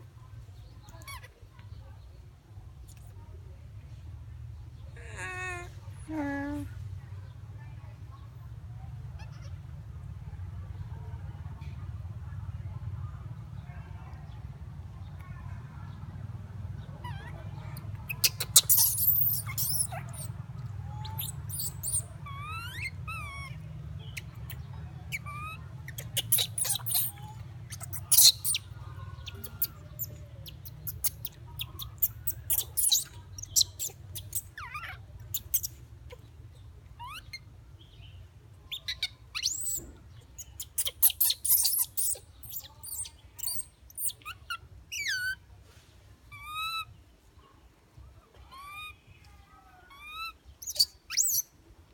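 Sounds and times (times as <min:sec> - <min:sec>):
macaque squeaking: 0:05.0 - 0:05.7, 0:09.0 - 0:09.6, 0:16.8 - 0:37.5, 0:38.7 - 0:45.4, 0:46.3 - 0:47.0, 0:48.4 - 0:49.1, 0:49.7 - 0:51.5.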